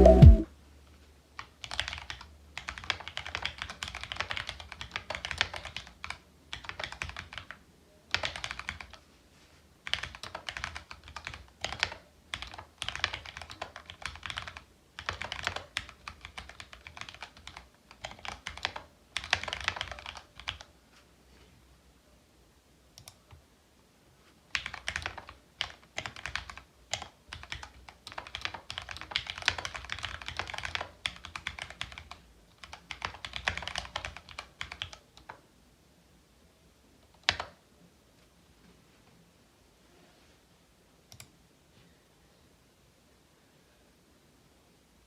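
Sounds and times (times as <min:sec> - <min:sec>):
typing on mechanical keyboard: 0:01.4 - 0:09.0, 0:09.8 - 0:20.7, 0:24.5 - 0:35.4, 0:37.0 - 0:37.6.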